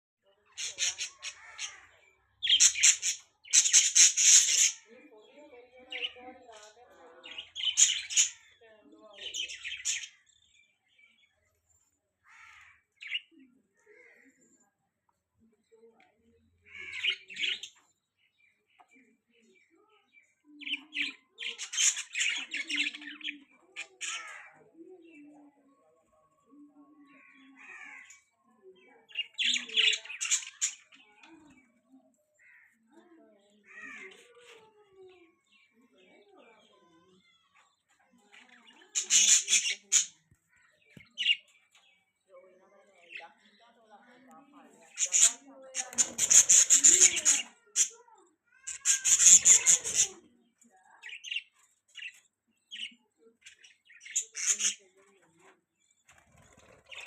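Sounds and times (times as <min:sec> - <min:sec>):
budgerigars chirping and warbling: 0:00.4 - 0:11.4, 0:12.3 - 0:14.3, 0:16.6 - 0:25.5, 0:27.0 - 0:31.8, 0:32.4 - 0:43.9, 0:44.8 - 0:57.0
budgerigars chirping: 0:00.6 - 0:01.8, 0:02.4 - 0:04.8, 0:38.9 - 0:40.1, 0:45.0 - 0:47.5, 0:48.8 - 0:50.2, 0:53.6 - 0:54.8.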